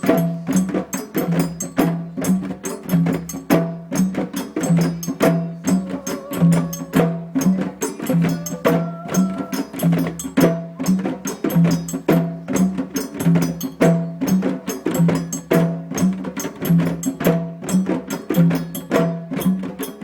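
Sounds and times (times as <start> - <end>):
djembe drumming: 0.0 - 20.0.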